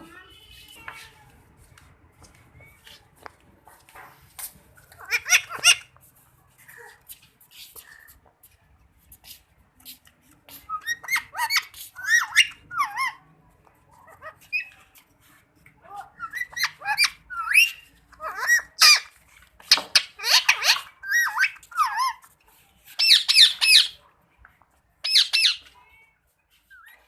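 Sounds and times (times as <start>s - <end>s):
parakeet squawking calls: 5.0s - 5.9s, 19.8s - 22.2s.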